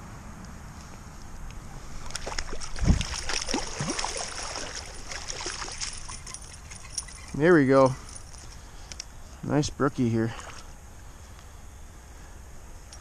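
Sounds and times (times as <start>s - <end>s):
water splashing in a stream: 1.9s - 7.4s
heavy splash: 2.0s - 6.0s.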